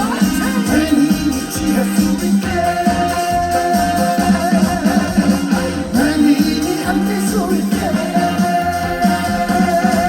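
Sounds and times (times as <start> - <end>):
band playing over a loudspeaker: 0.0 - 10.0.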